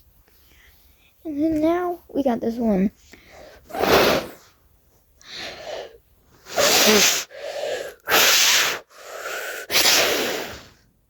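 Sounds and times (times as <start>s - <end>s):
person blowing through mouth: 3.7s - 4.4s, 6.5s - 10.7s.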